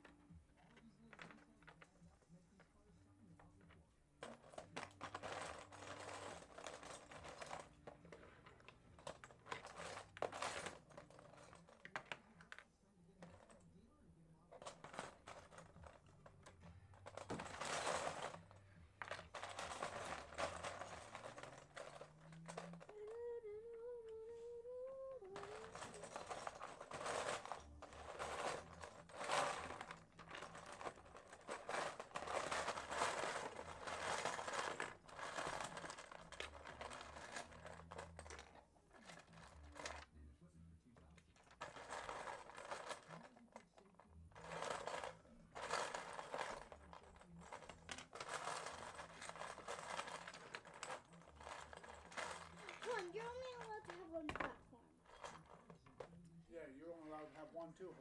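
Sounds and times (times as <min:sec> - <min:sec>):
plastic toy bricks clattering: 0:04.2 - 0:12.6, 0:14.5 - 0:40.1, 0:41.1 - 0:56.1.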